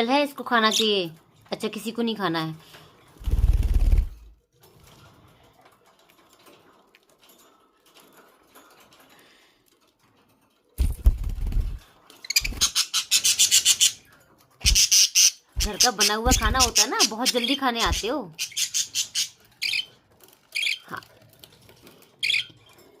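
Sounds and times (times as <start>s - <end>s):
budgerigars chattering: 12.3s - 14.0s, 14.6s - 19.9s.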